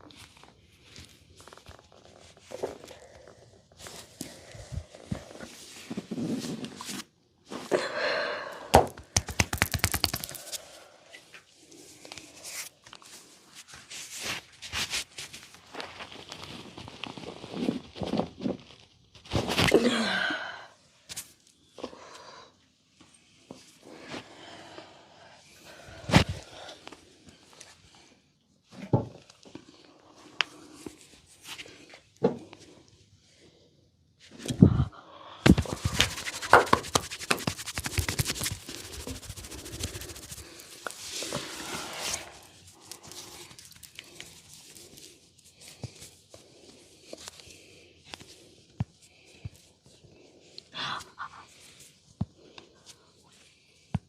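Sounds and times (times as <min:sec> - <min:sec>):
hands rubbing and slapping skin: 0:08.9 - 0:10.7, 0:35.5 - 0:46.0.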